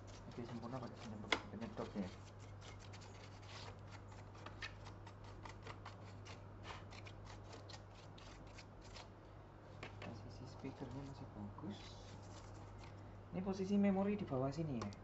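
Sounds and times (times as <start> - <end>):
scratching and clicking strokes: 0.0 - 9.1
faint low hum: 0.0 - 15.0.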